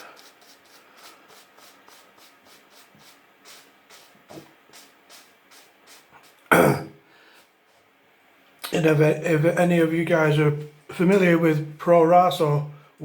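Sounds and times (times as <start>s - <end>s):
razor scraping beard stubble: 0.0s - 6.5s.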